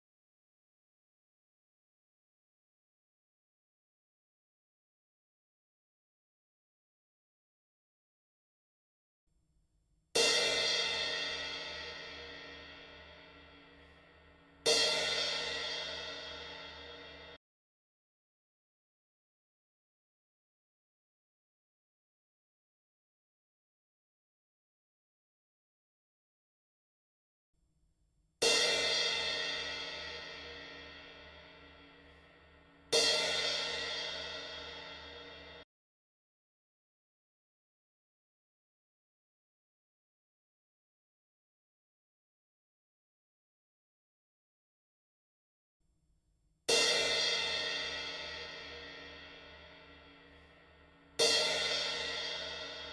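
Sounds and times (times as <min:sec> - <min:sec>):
cymbal struck and ringing: 0:46.7 - 0:52.9.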